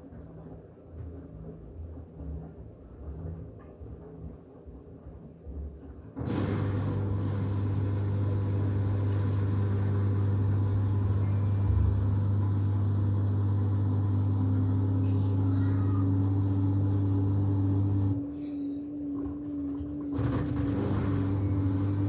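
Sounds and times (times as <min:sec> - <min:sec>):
washing machine motor hum: 0:00.0 - 0:22.0.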